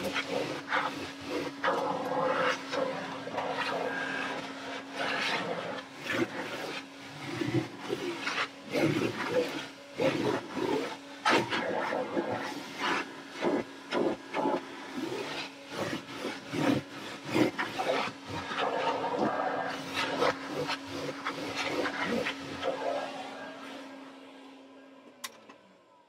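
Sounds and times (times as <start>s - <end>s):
scrubbing carpet: 0.0s - 23.6s.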